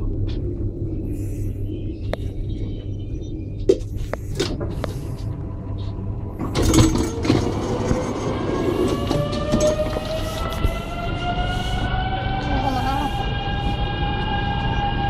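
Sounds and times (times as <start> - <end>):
electric train motor whine: 4.0 - 15.0.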